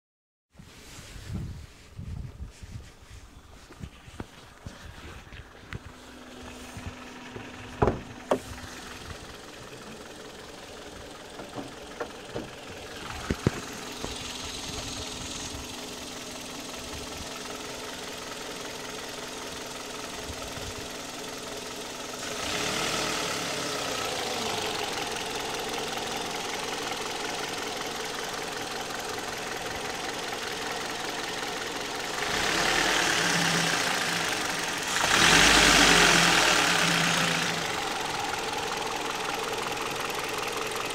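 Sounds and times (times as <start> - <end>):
car engine knocking: 4.6 - 40.9.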